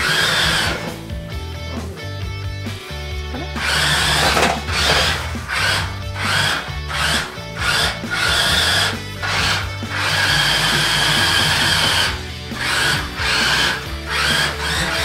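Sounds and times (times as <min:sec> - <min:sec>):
electric motor whining: 0:00.0 - 0:01.5, 0:03.3 - 0:15.0
background music: 0:00.0 - 0:15.0.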